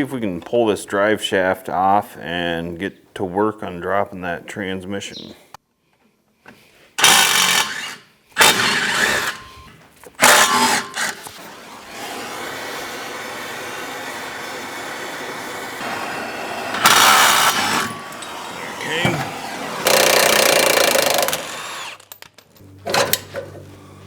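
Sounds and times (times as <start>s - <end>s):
power tool bursts: 7.0s - 22.2s.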